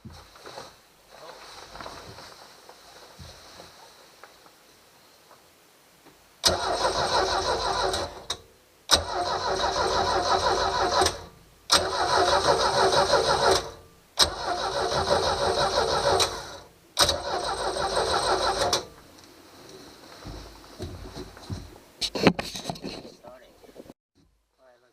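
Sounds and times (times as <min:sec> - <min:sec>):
boat engine starter cranking: 0:06.4 - 0:19.0.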